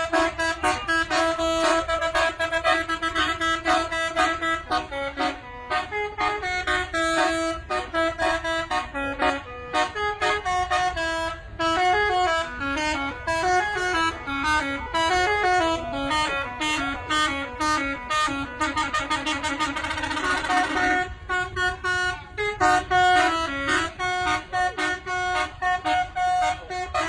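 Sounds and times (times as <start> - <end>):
musical air horns playing tune: 0.0 - 27.0.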